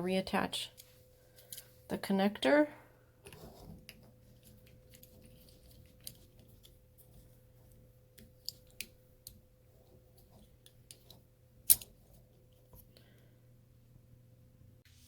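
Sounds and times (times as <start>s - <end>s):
faint steady hum: 0.0s - 15.0s
plastic clicks and handling: 10.4s - 12.0s.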